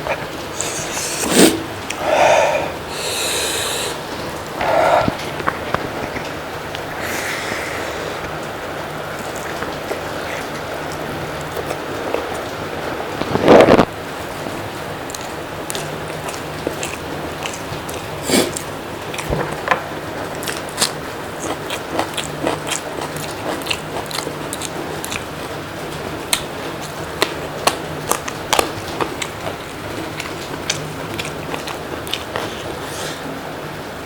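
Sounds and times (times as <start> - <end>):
person biting and chewing food: 0.0 - 6.2, 13.2 - 19.7, 20.3 - 25.6, 26.3 - 33.3.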